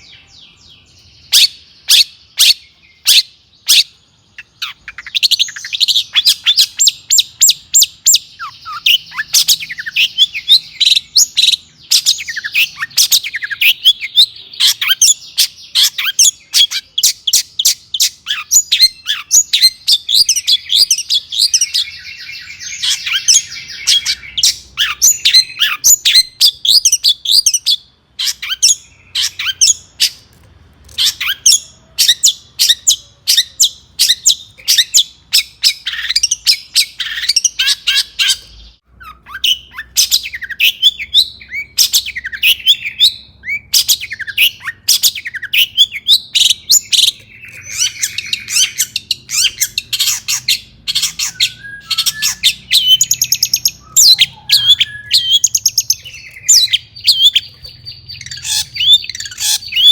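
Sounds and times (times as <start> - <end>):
bird singing chirps and whistles: 0.0 - 30.2, 31.0 - 59.9
bird buzzy chattering trill: 43.6 - 59.9.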